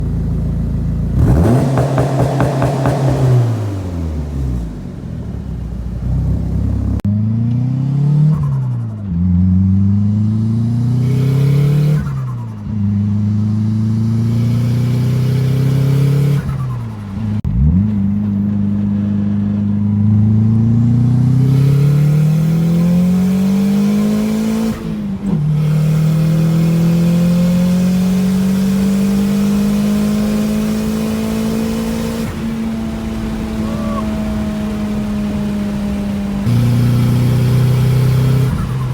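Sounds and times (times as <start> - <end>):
car engine accelerating: 0.0 - 38.9.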